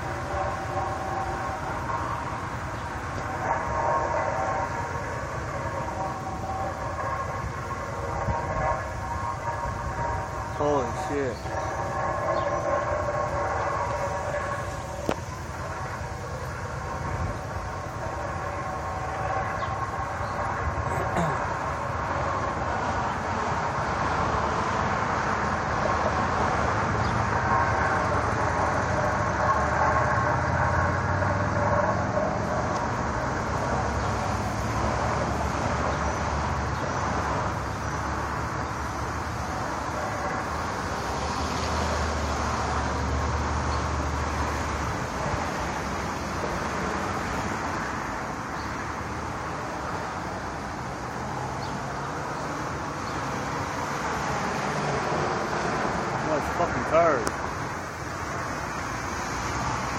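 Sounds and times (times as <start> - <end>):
steady drone of held tones: 0.0 - 43.4.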